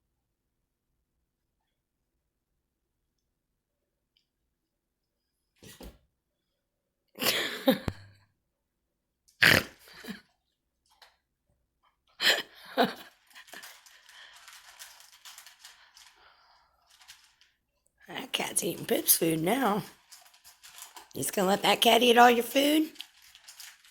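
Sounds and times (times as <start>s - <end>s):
faint irregular crackling: 12.8s - 23.9s.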